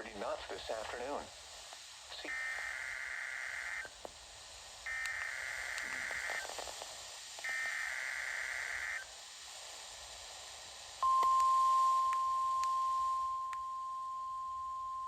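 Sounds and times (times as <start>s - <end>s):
radio static: 2.1s - 4.2s, 4.9s - 9.0s.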